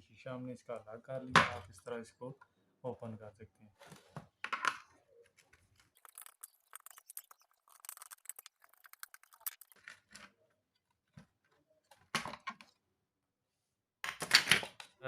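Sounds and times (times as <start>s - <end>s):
faint clicks and scrapes: 3.8s - 12.0s.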